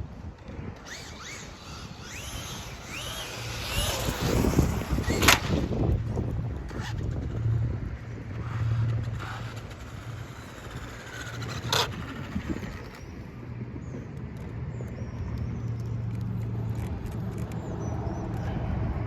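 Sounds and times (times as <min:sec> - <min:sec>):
low motor hum: 0:00.0 - 0:19.0.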